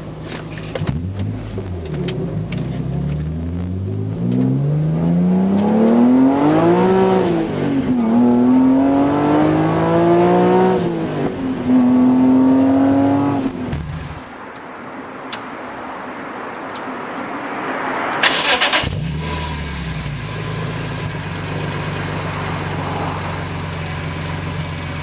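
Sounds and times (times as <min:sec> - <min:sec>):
car engine accelerating hard: 0:00.6 - 0:14.2, 0:18.2 - 0:25.0.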